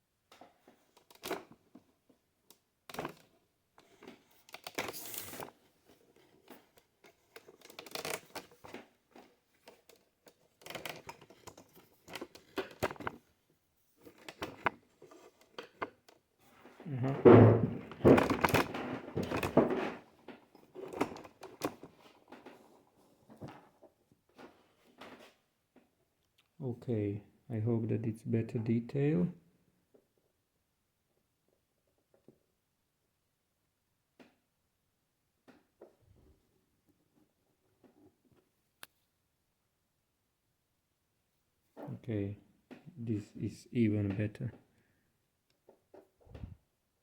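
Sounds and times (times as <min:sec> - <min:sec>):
clattering and bumping: 0:17.0 - 0:21.9.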